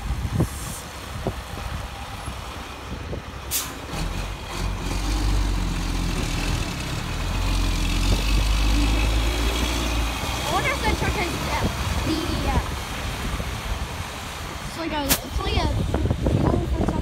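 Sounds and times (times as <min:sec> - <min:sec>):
truck diesel engine rumbling: 0:00.0 - 0:17.0
wind and rain noise: 0:00.0 - 0:17.0
short sharp hiss of air: 0:00.3 - 0:01.0, 0:03.5 - 0:03.9.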